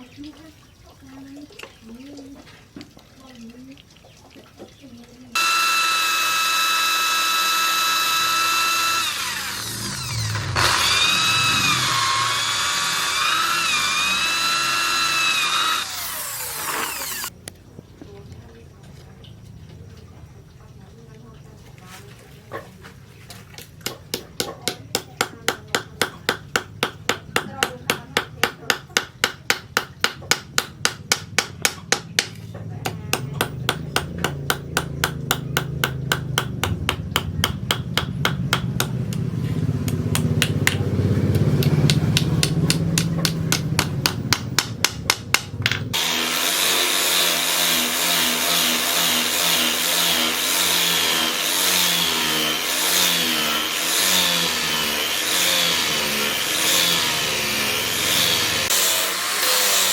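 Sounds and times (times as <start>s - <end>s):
power tool whine: 5.4s - 17.3s, 45.9s - 59.9s.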